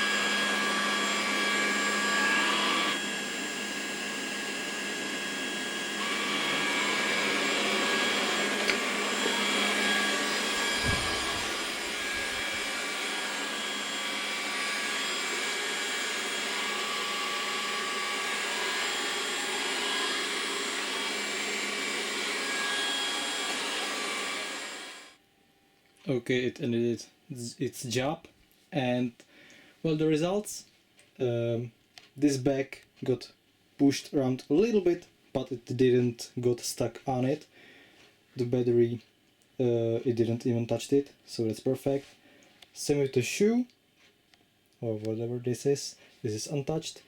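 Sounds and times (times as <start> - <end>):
robot vacuum whirring hum: 0.0 - 25.2.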